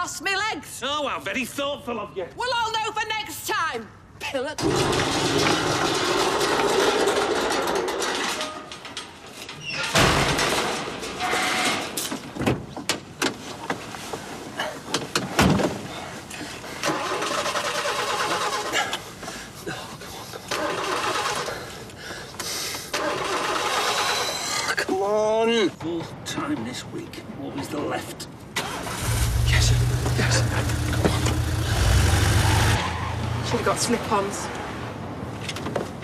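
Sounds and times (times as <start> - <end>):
vehicle engine starting and running: 16.8 - 19.0, 20.5 - 21.8, 22.9 - 24.4, 28.6 - 33.7.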